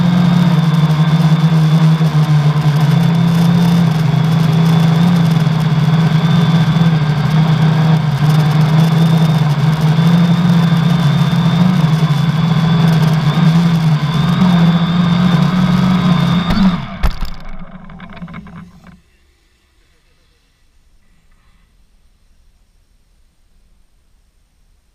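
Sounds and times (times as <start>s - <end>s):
drone motors humming with whine: 0.0s - 19.1s.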